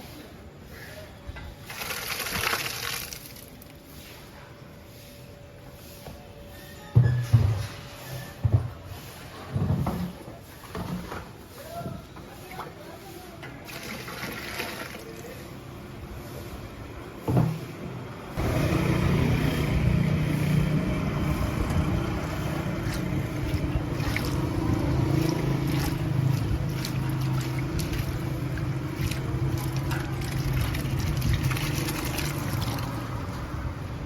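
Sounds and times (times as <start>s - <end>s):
motor rumble with low hum: 19.2s - 33.8s.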